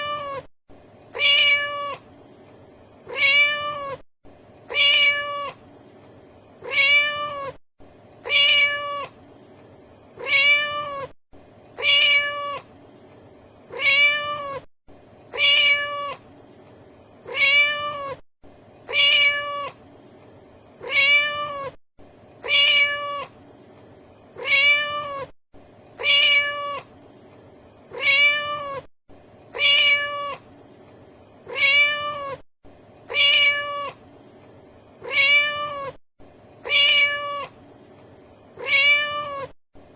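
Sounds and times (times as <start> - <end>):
cat meowing: 0.0 - 0.5, 1.1 - 2.1, 3.1 - 4.0, 4.7 - 5.6, 6.6 - 7.6, 8.2 - 9.2, 10.2 - 11.2, 11.8 - 12.7, 13.7 - 14.7, 15.3 - 16.2, 17.2 - 18.2, 18.9 - 19.8, 20.8 - 21.8, 22.4 - 23.3, 24.4 - 25.4, 26.0 - 26.9, 27.9 - 28.9, 29.5 - 30.4, 31.5 - 32.4, 33.1 - 34.0, 35.0 - 36.0, 36.6 - 37.6, 38.6 - 39.6.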